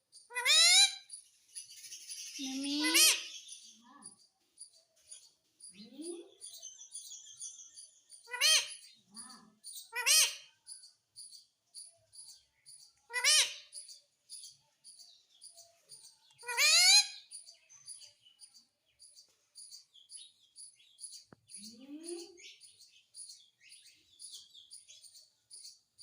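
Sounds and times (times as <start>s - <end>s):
parrot squawking: 0.3s - 1.1s, 2.8s - 3.4s, 8.3s - 8.8s, 9.9s - 10.5s, 13.1s - 13.7s, 16.4s - 17.2s.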